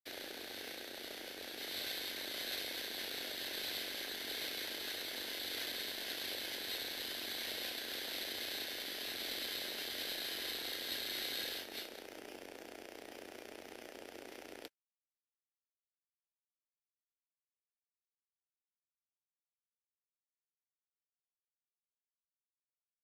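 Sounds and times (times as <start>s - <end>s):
motor driving plastic gears: 0.1s - 14.7s.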